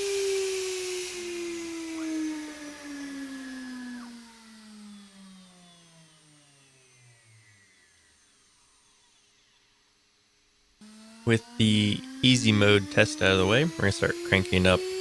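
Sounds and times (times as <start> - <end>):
spindle spinning down whine: 11.3 - 15.0.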